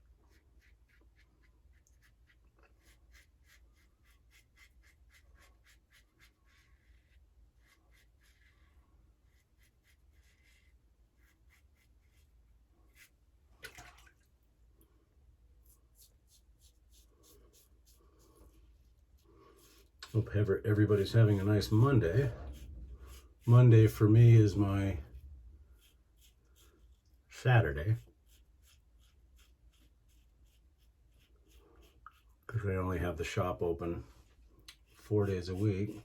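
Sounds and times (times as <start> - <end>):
razor scraping stubble: 15.7 - 32.5, 34.6 - 36.0.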